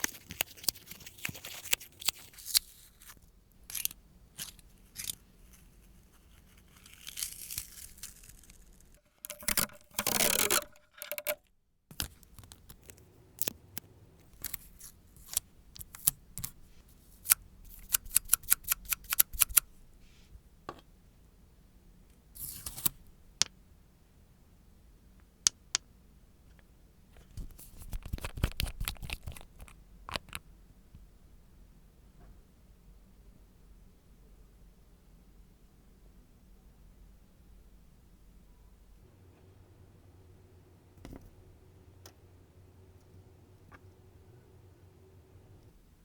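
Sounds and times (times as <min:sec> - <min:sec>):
nail tools clicking and snipping: 0:17.2 - 0:19.6.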